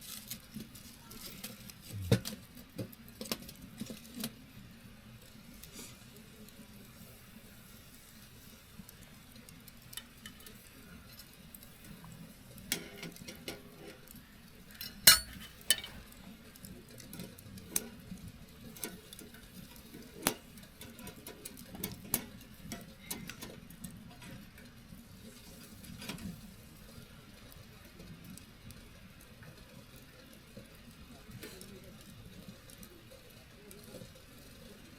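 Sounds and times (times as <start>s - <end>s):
wood fire crackling: 0.0s - 34.9s.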